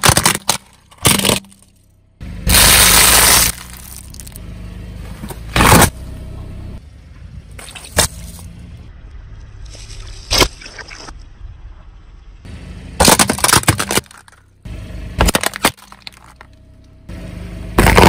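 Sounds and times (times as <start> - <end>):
tyres crushing crunchy objects: 0.0 - 1.8, 2.5 - 4.4, 5.2 - 6.0, 13.0 - 14.4, 15.2 - 16.5, 17.7 - 18.0
low hum of car: 0.0 - 18.0.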